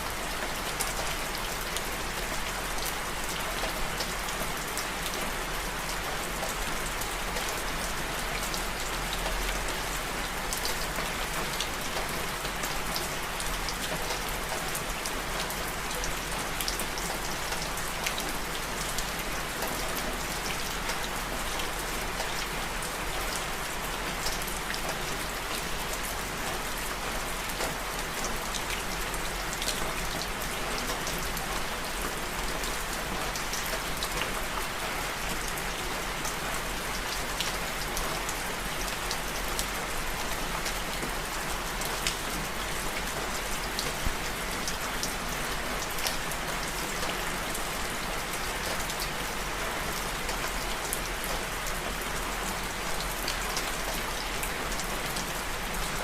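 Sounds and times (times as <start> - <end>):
rain pattering on a surface: 0.0 - 56.0.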